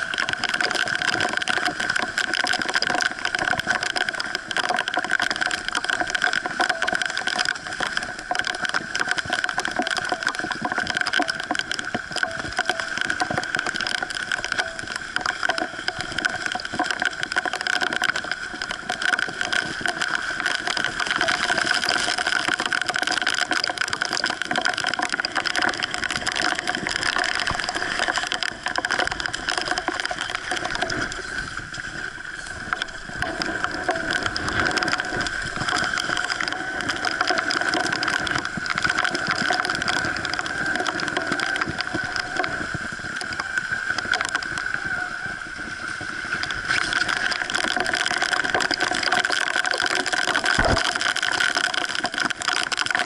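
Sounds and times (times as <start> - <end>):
water rushing: 0.0 - 53.0.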